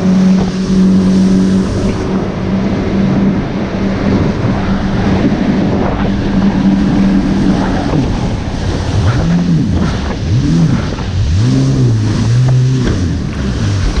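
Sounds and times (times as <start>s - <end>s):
jet ski engine revving: 0.0s - 14.0s
water noise: 0.0s - 14.0s
wind: 0.0s - 14.0s.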